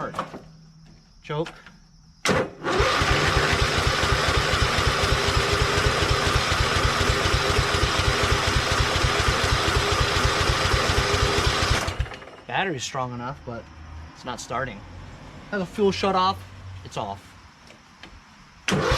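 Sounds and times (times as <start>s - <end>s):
tractor engine cranking: 2.3s - 12.6s, 18.7s - 18.9s.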